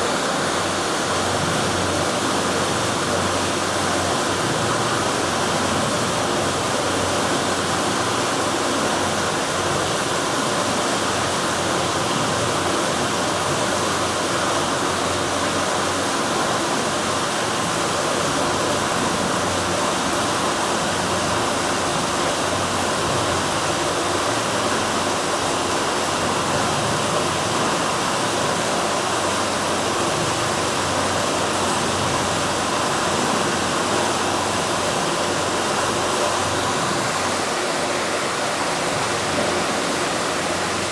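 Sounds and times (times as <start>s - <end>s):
sea surf rushing: 0.0s - 40.9s.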